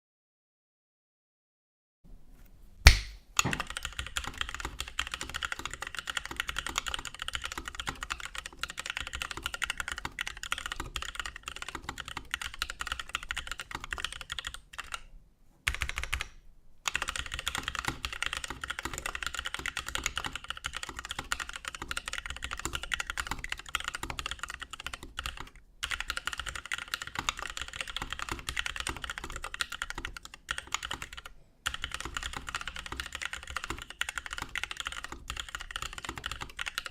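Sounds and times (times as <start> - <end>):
sharp knock: 2.8 - 3.6
fast typing on mechanical keyboard: 3.5 - 15.1, 15.7 - 16.3, 16.9 - 36.9.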